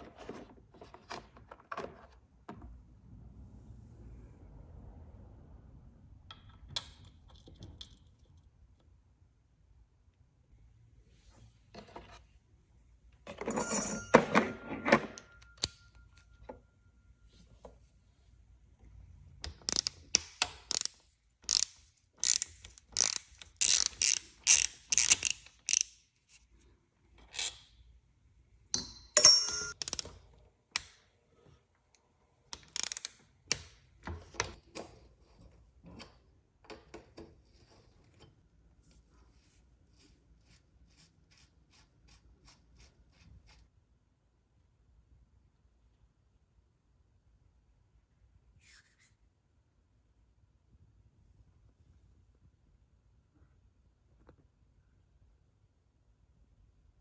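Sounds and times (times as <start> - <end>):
metal clank ringing: 13.5 - 15.6, 28.8 - 29.8.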